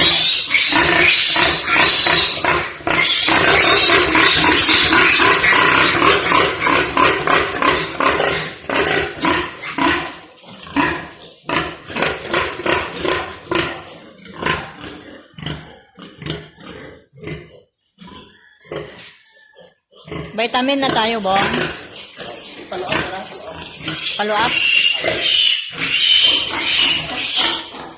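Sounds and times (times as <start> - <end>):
pigs squealing: 0.0 - 27.9.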